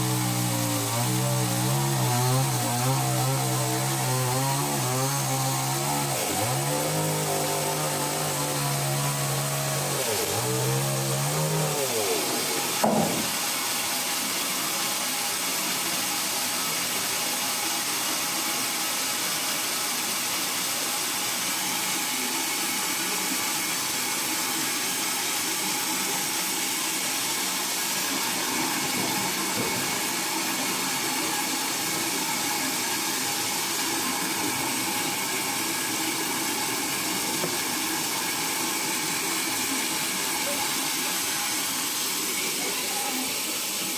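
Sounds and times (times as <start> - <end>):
motor pitch falling: 0.0 - 13.2
saw cutting hiss: 0.0 - 13.5.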